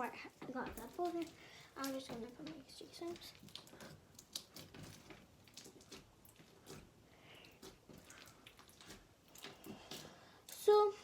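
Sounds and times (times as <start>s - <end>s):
slime crackling and squishing: 0.0s - 11.0s.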